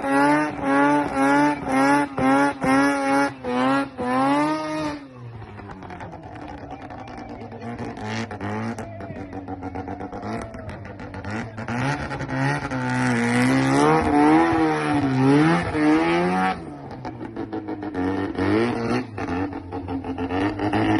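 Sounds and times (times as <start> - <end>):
rotary engine revving: 0.0 - 20.9.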